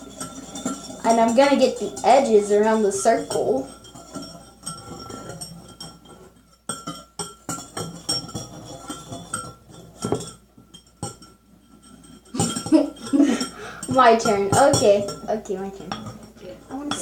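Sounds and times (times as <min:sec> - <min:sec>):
utensil scraping and clinking bowl: 0:00.0 - 0:17.0.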